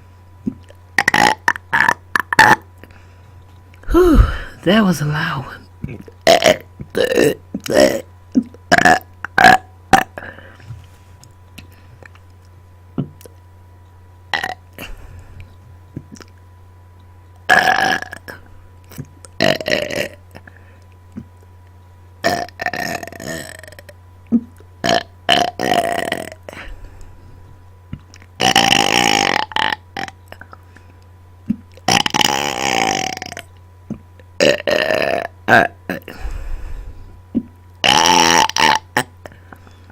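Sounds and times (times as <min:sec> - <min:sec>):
person burping: 0:01.0 - 0:02.7, 0:03.9 - 0:04.7, 0:06.2 - 0:10.4, 0:14.4 - 0:14.6, 0:17.5 - 0:18.4, 0:19.4 - 0:20.2, 0:22.2 - 0:23.9, 0:24.8 - 0:26.4, 0:28.4 - 0:30.1, 0:31.9 - 0:33.4, 0:34.4 - 0:36.2, 0:37.8 - 0:39.1.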